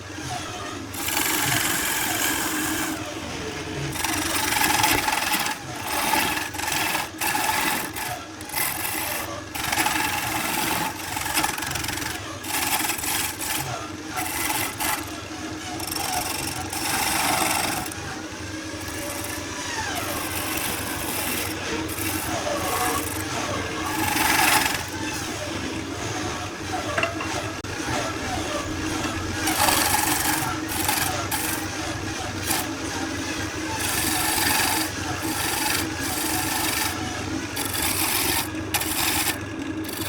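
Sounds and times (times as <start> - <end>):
tool scraping wood: 0.0 - 40.0.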